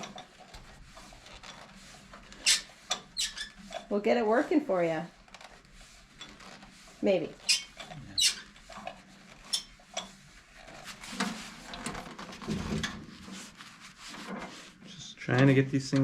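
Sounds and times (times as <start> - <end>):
rusty mechanism squeaking and clinking: 2.3 - 3.9, 7.4 - 10.2.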